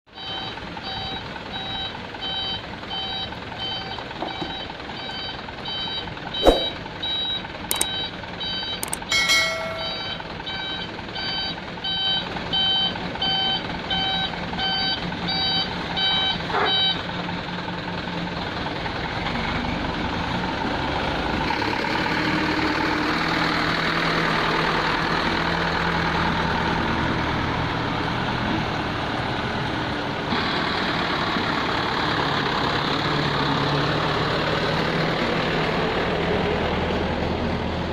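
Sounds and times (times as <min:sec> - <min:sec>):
reversing alarm beeping: 0:00.2 - 0:17.0
diesel engine running: 0:00.2 - 0:37.9.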